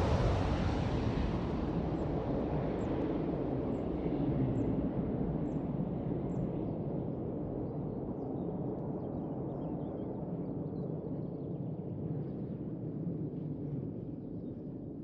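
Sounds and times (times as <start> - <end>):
jet airliner engines rumbling: 0.0 - 8.0.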